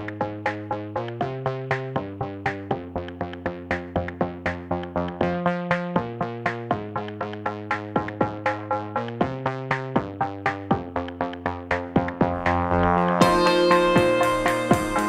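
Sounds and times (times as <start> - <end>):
held bass: 11.4 - 15.0
sharply struck string notes: 12.3 - 15.0.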